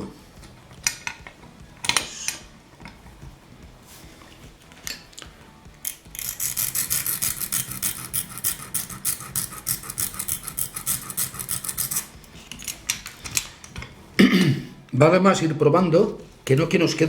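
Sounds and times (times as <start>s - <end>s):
hand file rasping on metal: 5.9s - 12.4s.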